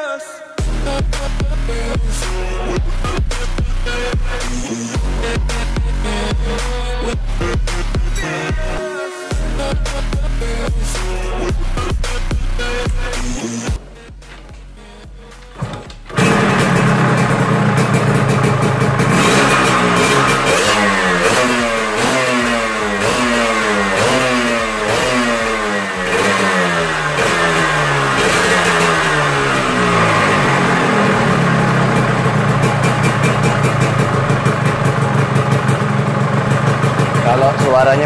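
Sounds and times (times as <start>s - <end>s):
two-stroke motorcycle engine revving: 15.6s - 38.0s.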